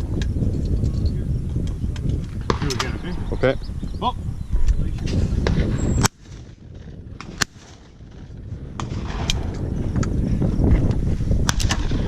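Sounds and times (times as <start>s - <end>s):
low rumbling noise: 0.0s - 12.0s
shotgun shot: 2.4s - 3.1s, 11.5s - 12.0s.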